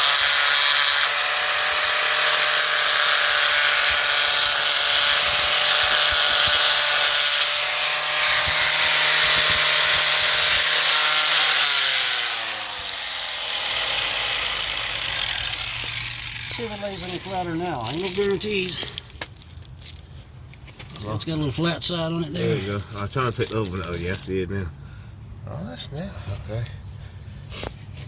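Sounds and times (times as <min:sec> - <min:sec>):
grinder winding down: 0:00.0 - 0:18.8
electric grinder grinding steel: 0:00.0 - 0:19.0.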